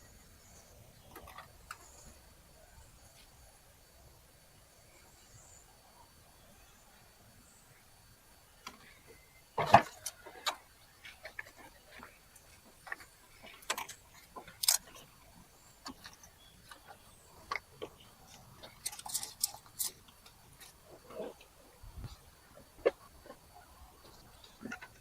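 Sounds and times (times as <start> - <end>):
hand tools clicking on car parts: 9.6 - 15.1, 15.8 - 20.8.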